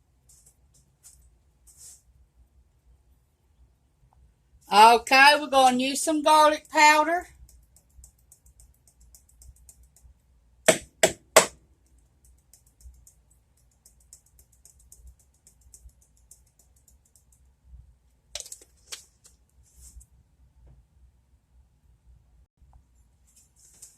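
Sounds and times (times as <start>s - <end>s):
rapid light ticking: 6.5s - 10.4s, 11.8s - 17.7s.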